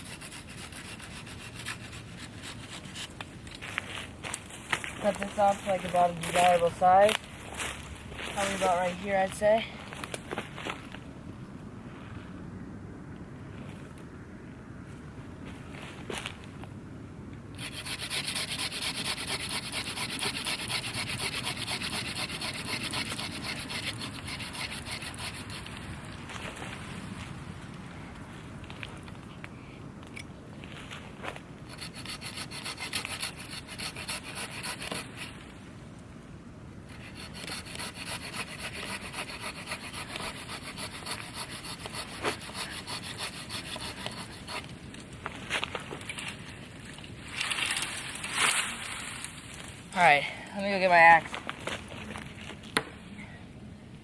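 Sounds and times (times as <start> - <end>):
saw cutting tree limb: 0.0 - 4.4, 17.6 - 26.0, 31.7 - 35.4, 36.9 - 44.8.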